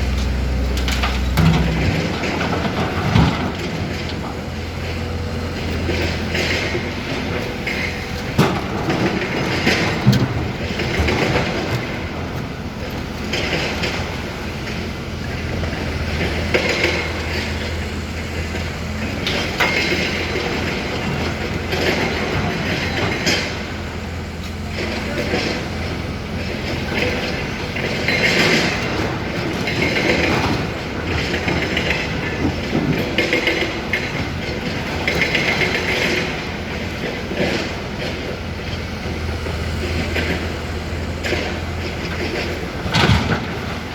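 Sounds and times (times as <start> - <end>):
rattling clanking metal clatter: 0.0 - 5.0, 41.2 - 43.9
excavator diesel engine hum: 0.0 - 43.9.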